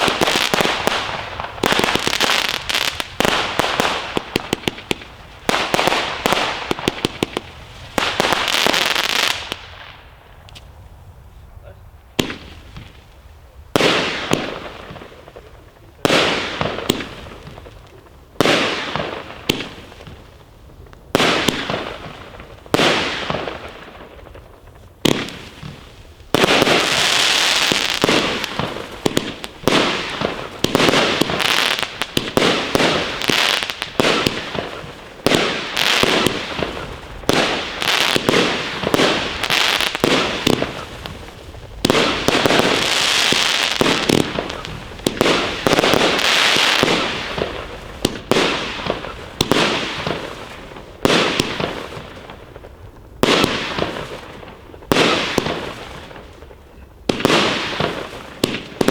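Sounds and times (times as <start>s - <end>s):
rapid firework barrage: 0.0s - 10.1s, 12.1s - 13.0s, 13.7s - 58.9s
firework crackling: 0.0s - 11.4s, 12.0s - 58.9s
firework shots launching: 12.2s - 13.0s, 18.4s - 20.2s, 21.2s - 24.3s, 25.0s - 56.3s, 57.1s - 58.9s.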